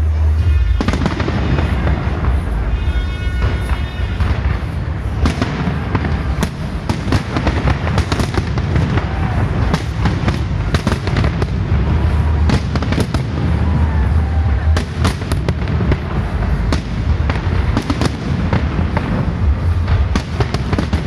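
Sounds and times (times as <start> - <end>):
firework bangs and crackles: 0.0 - 21.0.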